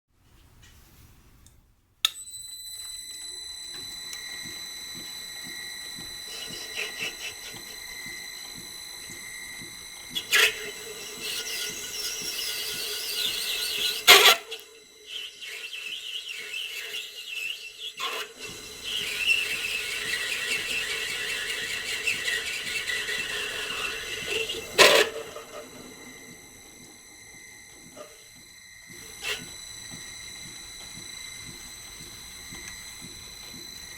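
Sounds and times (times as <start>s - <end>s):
metal lathe whining: 2.7s - 33.9s
cutting tool squealing and chattering: 5.7s - 8.9s, 9.8s - 29.8s.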